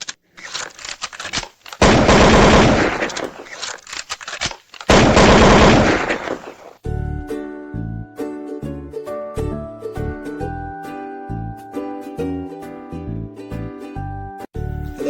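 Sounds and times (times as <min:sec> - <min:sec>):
automatic gunfire: 0:01.8 - 0:03.6, 0:04.9 - 0:06.7
single gunshot cracks: 0:04.9 - 0:06.7.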